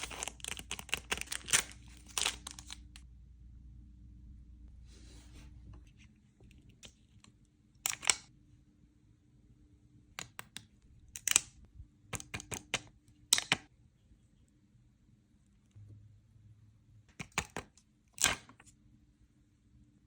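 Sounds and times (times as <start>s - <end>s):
plastic packaging rustling: 0.0s - 3.0s.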